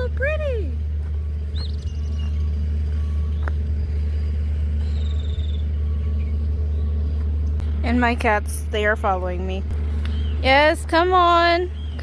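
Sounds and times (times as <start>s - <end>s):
steady low rumble: 0.0s - 12.0s
bird chirps: 1.5s - 7.6s, 10.0s - 10.7s, 11.6s - 12.0s.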